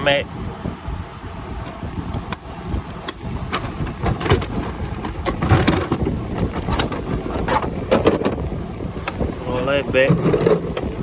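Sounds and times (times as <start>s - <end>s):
microphone handling rumble: 0.0s - 11.0s
tools clicking and clunking: 1.6s - 8.4s, 10.1s - 11.0s.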